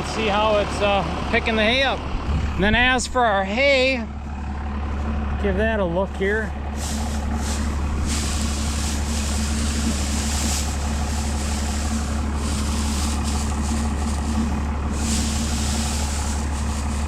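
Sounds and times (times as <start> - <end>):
tractor diesel engine running: 0.0 - 17.0
brief rustling: 6.8 - 17.0.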